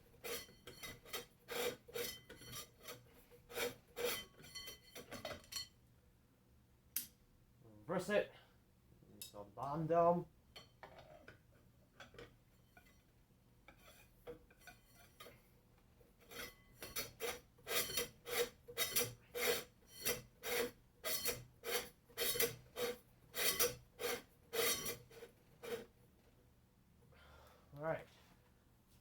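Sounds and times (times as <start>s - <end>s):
metal threads rasping: 0.2s - 5.7s, 13.7s - 15.4s, 16.2s - 26.0s.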